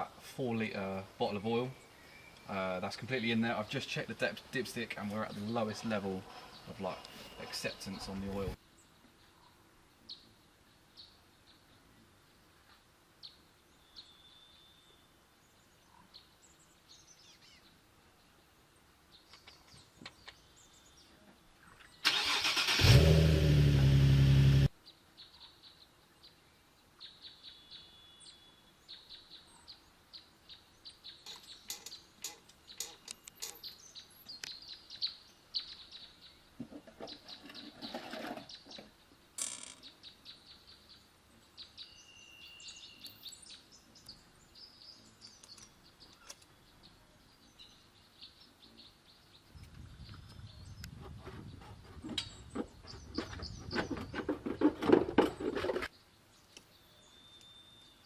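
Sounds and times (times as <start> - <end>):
birds chirping: 0.0 - 12.0, 24.8 - 58.0
car engine starting and running: 22.1 - 24.7.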